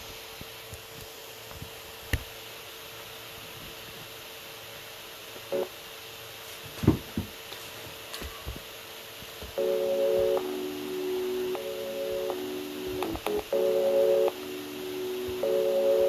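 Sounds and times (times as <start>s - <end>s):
steady hiss: 0.0s - 16.0s
faint hum: 5.1s - 6.5s, 9.5s - 16.0s.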